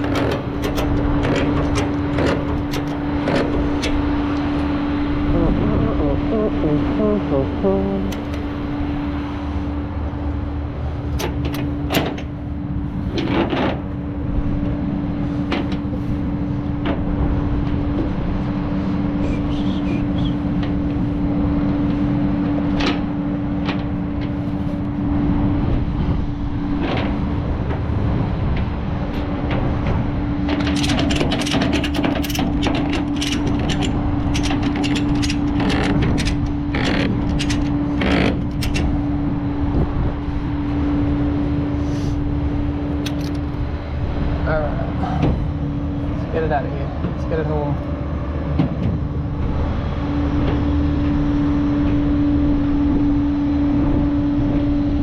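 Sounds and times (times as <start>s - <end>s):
clicks and clanks: 0.0s - 4.7s, 11.1s - 12.4s, 13.1s - 14.0s, 15.4s - 16.0s, 28.5s - 39.0s, 42.9s - 43.6s
tow truck engine whine: 0.0s - 55.0s.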